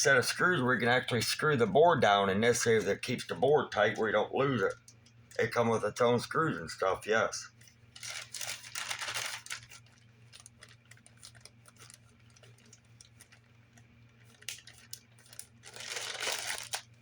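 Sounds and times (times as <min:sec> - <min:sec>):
steady low hum: 0:00.0 - 0:17.0
packaging rustling: 0:07.9 - 0:17.0.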